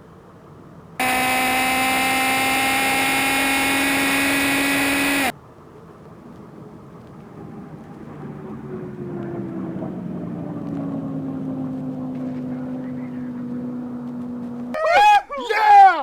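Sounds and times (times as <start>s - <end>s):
motorcycle engine at high pitch: 1.0s - 5.3s.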